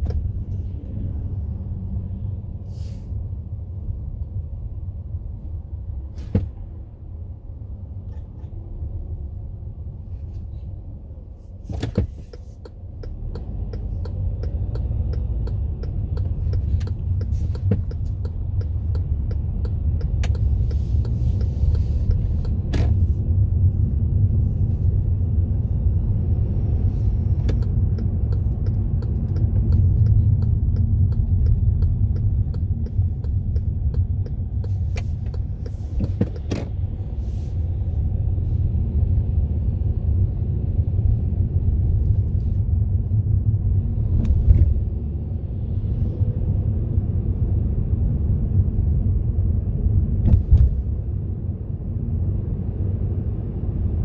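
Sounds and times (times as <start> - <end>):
car engine and tyres rumbling: 0.0 - 54.0
knocks and rattling ticks: 11.9 - 22.6, 27.5 - 36.8.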